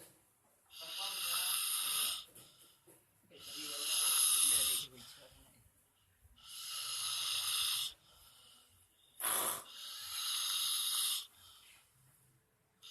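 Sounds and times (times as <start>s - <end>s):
person snoring with hissing wheeze: 0.7s - 2.3s, 3.4s - 5.3s, 6.4s - 8.0s, 9.2s - 11.4s.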